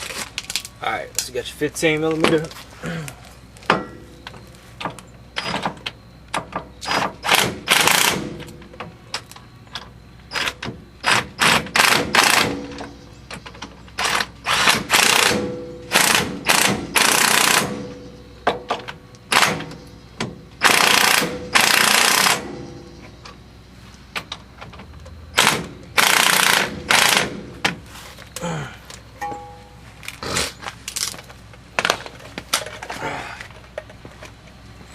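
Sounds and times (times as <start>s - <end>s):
impact wrench hammering: 29.2s - 29.8s.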